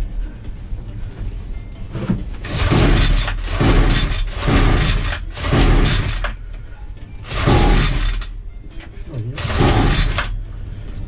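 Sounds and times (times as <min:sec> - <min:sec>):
recoil starter rasping pulls: 0:02.4 - 0:06.4, 0:07.3 - 0:08.4, 0:09.4 - 0:10.4.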